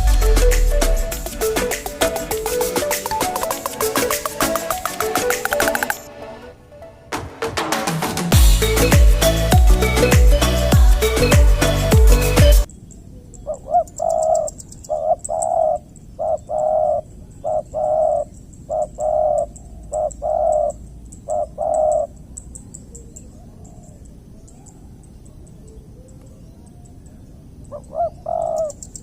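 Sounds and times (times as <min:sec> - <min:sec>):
music: 0:00.0 - 0:12.7
rapid high insect ticking: 0:01.1 - 0:06.0, 0:12.6 - 0:16.3, 0:18.3 - 0:25.6, 0:28.4 - 0:29.0
dove cooing: 0:13.4 - 0:25.0, 0:27.7 - 0:29.0.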